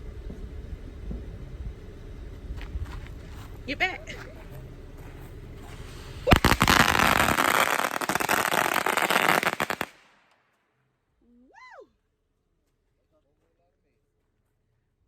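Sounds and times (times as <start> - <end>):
firework crack: 5.5 - 10.4
firework crackling and hissing: 5.6 - 10.3.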